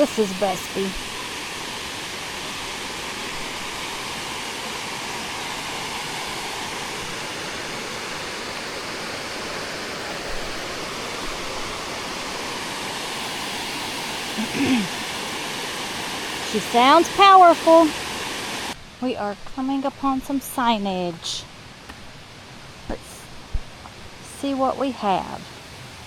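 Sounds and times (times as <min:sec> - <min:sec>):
waterfall roaring: 0:00.0 - 0:18.8.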